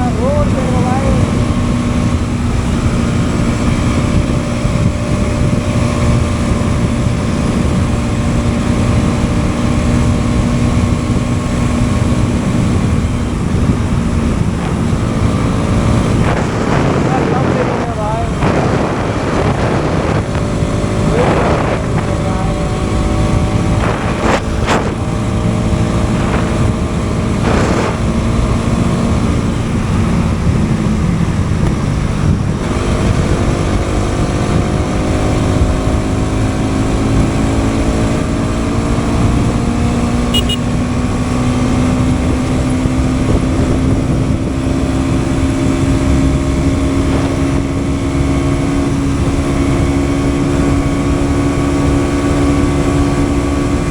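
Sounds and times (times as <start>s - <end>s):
motorcycle engine accelerating: 0.0s - 53.9s
wind rushing: 10.4s - 34.4s.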